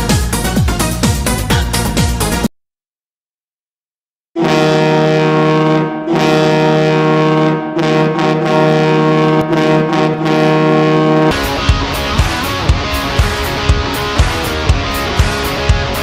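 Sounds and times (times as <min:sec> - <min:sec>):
goal horn blast: 0:04.4 - 0:16.0
rock song with guitar and drums: 0:11.3 - 0:16.0.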